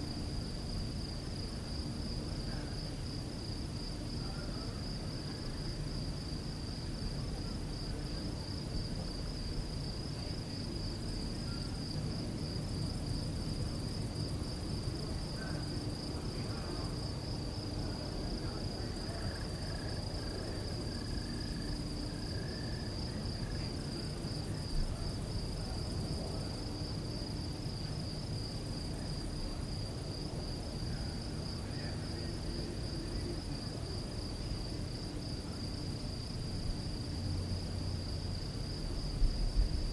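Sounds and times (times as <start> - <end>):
crickets chirping: 0.0 - 39.9
low background rumble: 34.6 - 39.9.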